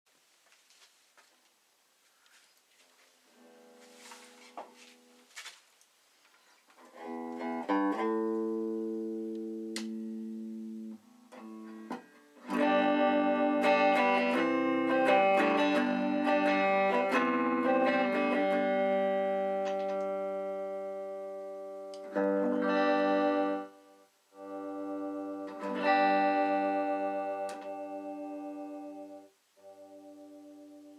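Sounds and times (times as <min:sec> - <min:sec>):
electric guitar playing: 0:06.8 - 0:30.9.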